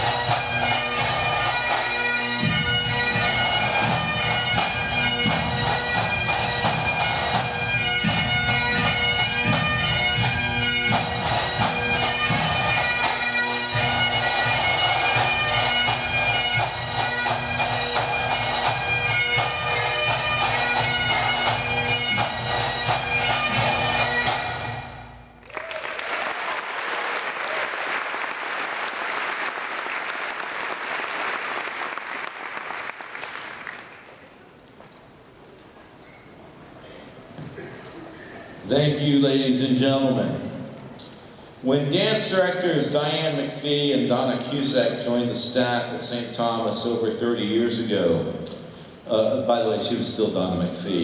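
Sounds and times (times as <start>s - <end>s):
side drums beating: 0.0s - 24.8s
bagpipes playing melody: 0.0s - 25.0s.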